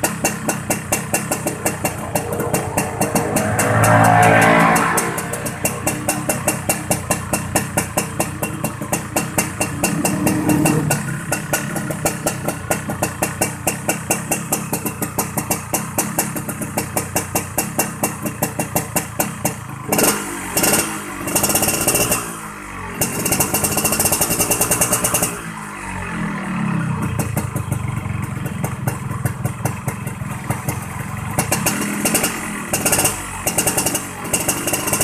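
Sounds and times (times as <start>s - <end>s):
motorcycle engine idling: 0.0s - 4.0s, 5.2s - 19.9s, 25.9s - 35.0s.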